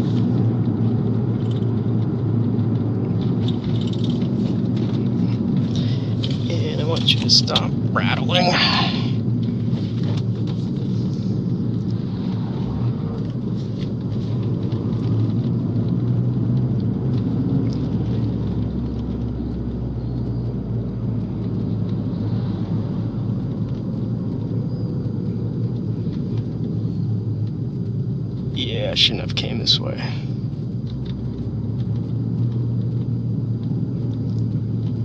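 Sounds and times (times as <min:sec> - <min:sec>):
car engine running: 0:00.0 - 0:35.0
road and tyre noise: 0:00.0 - 0:35.0
light rattles: 0:03.1 - 0:07.7.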